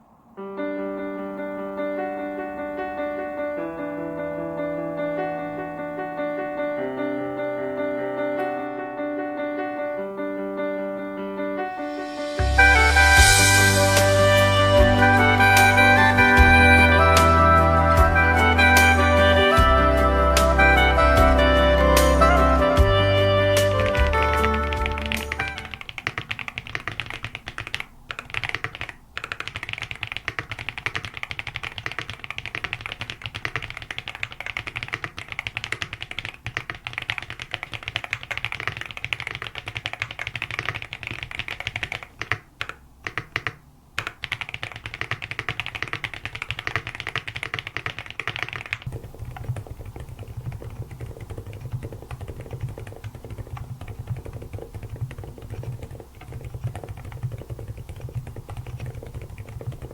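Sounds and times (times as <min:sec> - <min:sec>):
fast typing on mechanical keyboard: 0:23.6 - 0:59.9.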